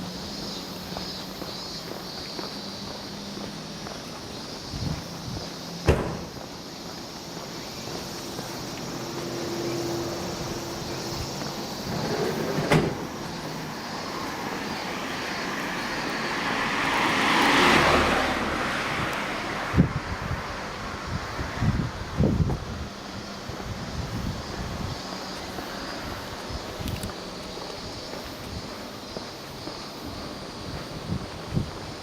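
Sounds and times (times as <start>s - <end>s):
street ambience: 0.0s - 32.0s
sharp knocks: 5.8s - 6.4s
vehicle passing: 8.0s - 22.4s.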